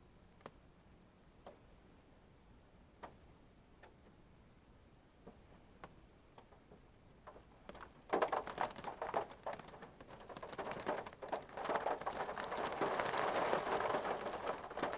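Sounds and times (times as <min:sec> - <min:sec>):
rain pattering on a car: 0:07.6 - 0:14.9.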